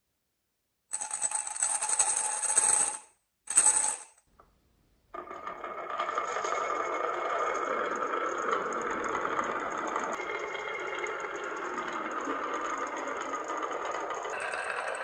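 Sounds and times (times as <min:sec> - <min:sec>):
marbles rattling down track: 0:05.2 - 0:15.0
toy motor whirring: 0:14.3 - 0:15.0.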